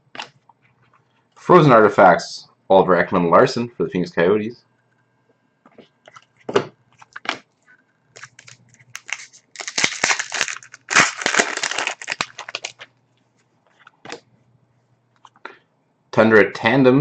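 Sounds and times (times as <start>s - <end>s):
plastic wrapper crinkling: 8.1s - 13.0s.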